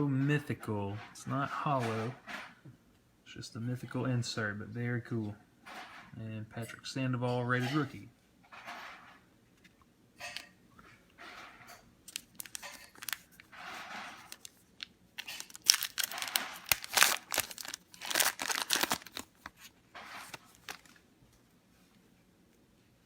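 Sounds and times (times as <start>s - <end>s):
foil wrapper tearing and crinkling: 12.1s - 21.0s.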